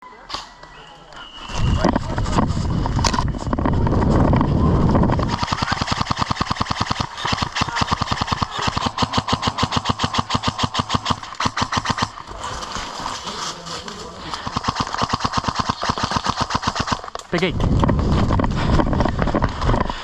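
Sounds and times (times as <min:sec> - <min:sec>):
low rumbling noise: 0:01.6 - 0:05.4, 0:17.5 - 0:20.0
airsoft gun rapid fire: 0:05.1 - 0:17.6.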